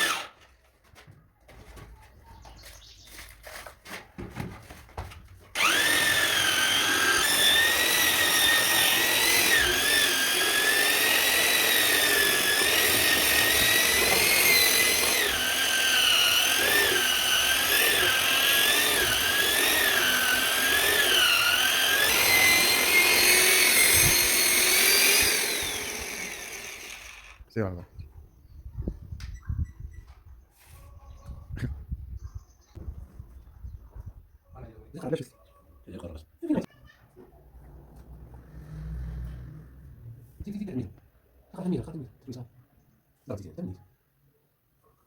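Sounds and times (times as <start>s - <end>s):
electric power tool whining: 0.0s - 0.4s, 5.5s - 27.5s.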